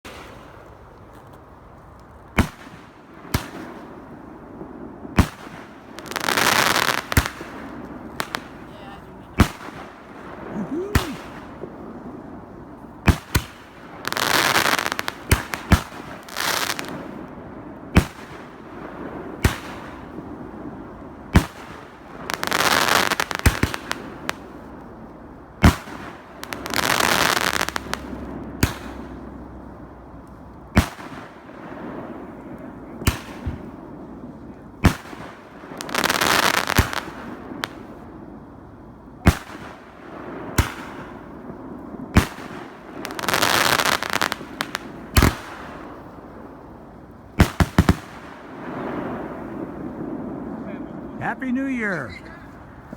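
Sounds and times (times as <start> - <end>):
noisy firework bursts: 2.3 - 52.9
fireworks banging: 2.4 - 17.3, 51.1 - 52.9.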